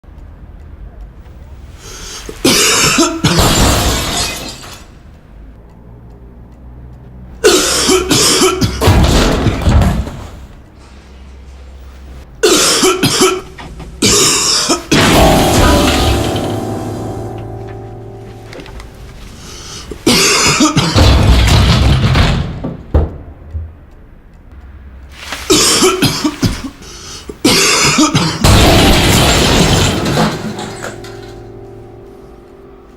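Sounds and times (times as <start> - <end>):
man coughing hard: 2.4 - 3.6, 7.4 - 8.8, 12.4 - 15.2, 20.0 - 21.2, 25.5 - 28.5.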